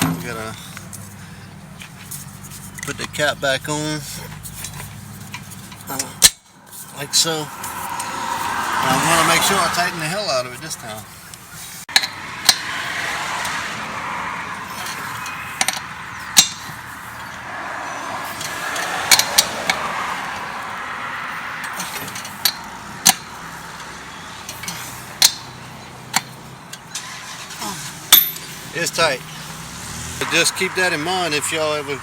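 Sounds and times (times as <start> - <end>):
wrench clicking on lug nuts: 11.9 - 12.8, 14.7 - 17.4, 18.3 - 20.4, 21.6 - 28.5.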